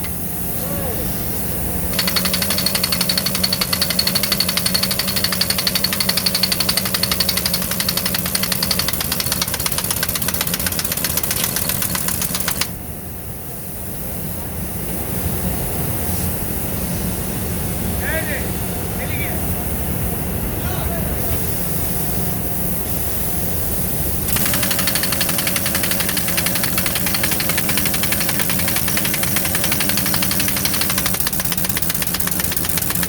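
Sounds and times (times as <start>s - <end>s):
rapid clatter of knocks: 2.0s - 12.7s, 24.3s - 33.0s.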